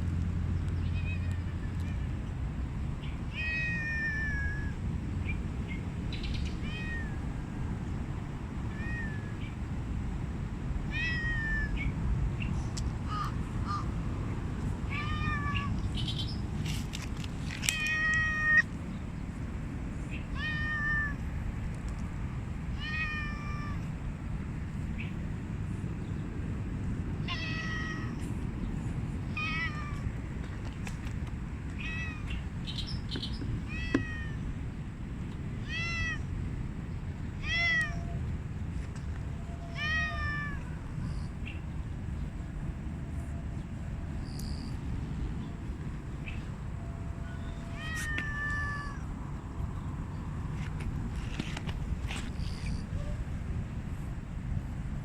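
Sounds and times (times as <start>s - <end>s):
cat meowing: 6.6s - 7.2s, 10.9s - 11.8s, 14.9s - 15.7s, 17.7s - 18.7s, 20.3s - 21.2s, 22.8s - 23.8s, 27.2s - 28.2s, 29.3s - 30.0s, 33.7s - 34.4s, 35.6s - 36.3s, 37.4s - 38.2s, 39.5s - 40.9s, 47.1s - 49.1s.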